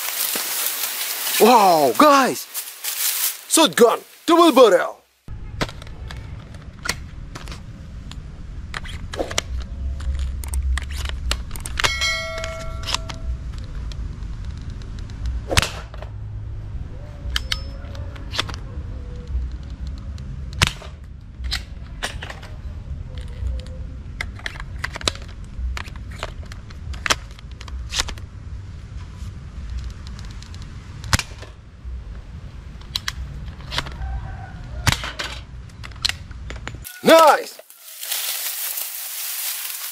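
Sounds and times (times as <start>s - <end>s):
clear ringing tone: 11.9s - 13.4s
sharp plastic clicks and snaps: 32.8s - 33.9s.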